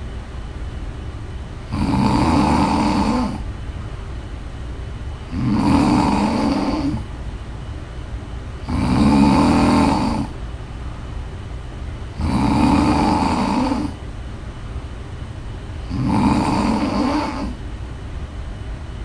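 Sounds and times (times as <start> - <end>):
woman snoring: 1.6 - 3.4, 5.3 - 7.1, 8.6 - 10.4, 12.2 - 14.0, 15.8 - 17.6
quiet breathing: 1.6 - 3.5, 5.2 - 7.2, 8.6 - 11.2, 15.8 - 17.7.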